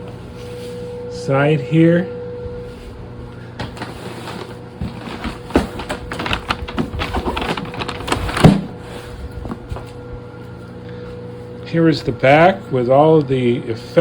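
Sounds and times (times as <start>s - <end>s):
cardboard box rustling and knocking: 3.6s - 8.7s.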